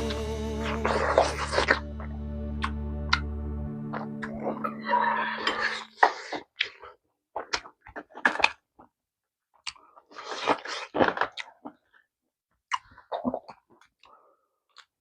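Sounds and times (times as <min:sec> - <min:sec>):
person chewing and smacking: 0:05.4 - 0:15.0.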